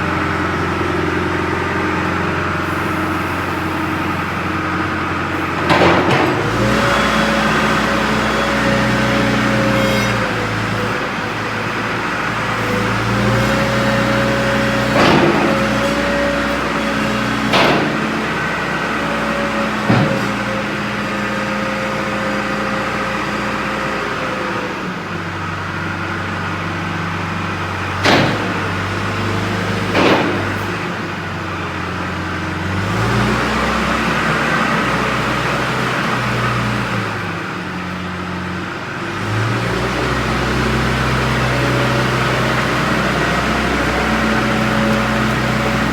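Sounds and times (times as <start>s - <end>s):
diesel engine revving: 0.0s - 45.9s
sharp knocks: 28.0s - 28.8s, 29.9s - 30.7s.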